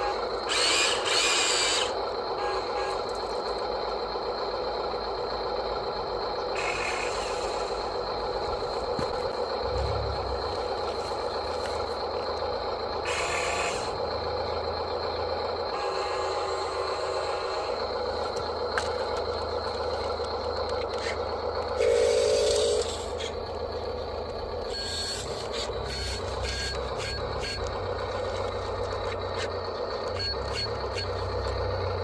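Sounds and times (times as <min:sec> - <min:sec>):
small electric motors whirring: 0:00.0 - 0:02.0, 0:13.0 - 0:14.0, 0:21.8 - 0:23.4, 0:24.7 - 0:29.5.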